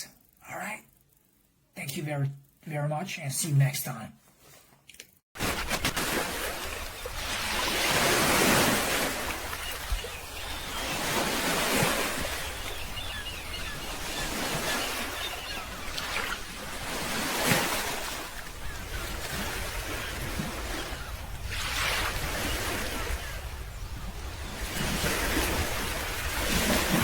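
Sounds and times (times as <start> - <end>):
surf washing in: 5.4 - 27.0
wind rumbling on microphone: 6.5 - 27.0.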